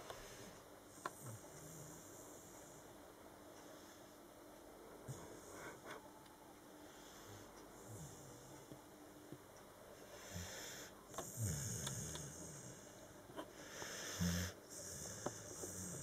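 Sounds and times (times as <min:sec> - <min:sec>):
pet snoring: 0:00.2 - 0:02.8, 0:07.1 - 0:08.6, 0:10.1 - 0:16.0.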